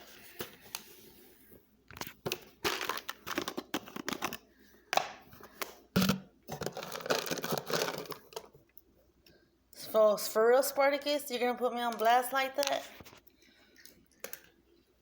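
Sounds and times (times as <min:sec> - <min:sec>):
plastic packaging crinkling: 0:01.9 - 0:04.5, 0:06.0 - 0:08.6.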